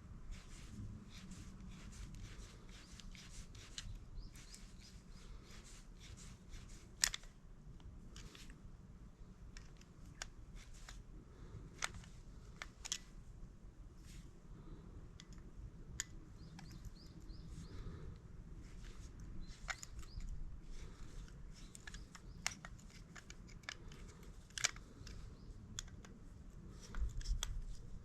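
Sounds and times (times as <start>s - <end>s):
steady low hum: 0.0s - 28.0s
small metal parts scraping and clicking: 0.4s - 7.4s, 11.7s - 13.2s, 18.6s - 28.0s.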